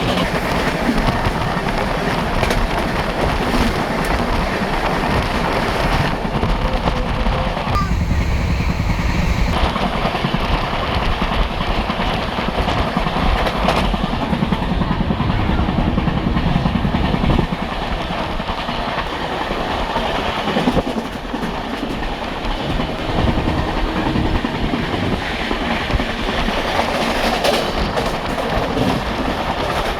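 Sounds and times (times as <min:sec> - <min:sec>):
train rumbling: 0:00.0 - 0:29.9
wheels clattering over rails: 0:11.6 - 0:29.9.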